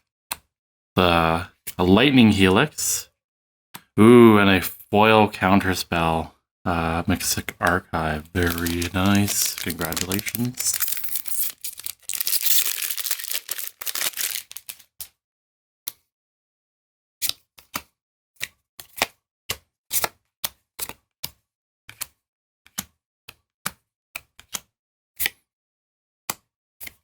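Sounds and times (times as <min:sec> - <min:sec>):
foil wrapper crinkling and tearing: 0:08.0 - 0:14.9.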